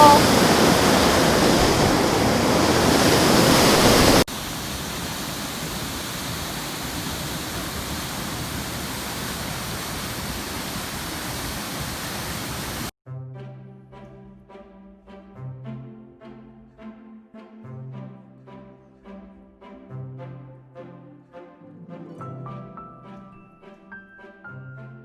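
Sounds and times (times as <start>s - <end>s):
waterfall rushing: 0.0s - 12.9s
background music with horns: 13.1s - 25.0s.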